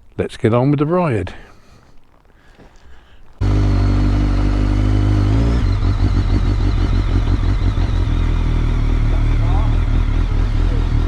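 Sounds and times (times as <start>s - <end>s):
motorcycle engine running: 3.4s - 11.0s.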